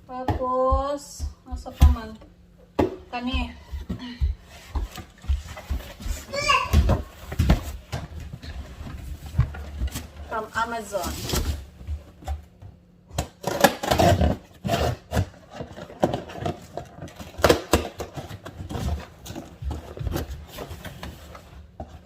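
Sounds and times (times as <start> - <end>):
cardboard package being opened: 13.4 - 21.4.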